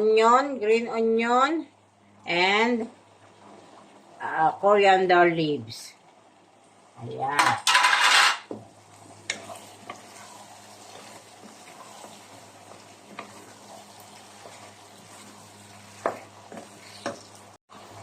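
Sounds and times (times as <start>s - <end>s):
chicken sizzling in a pan: 7.0s - 18.0s
spatula knocking a pan: 15.9s - 17.3s.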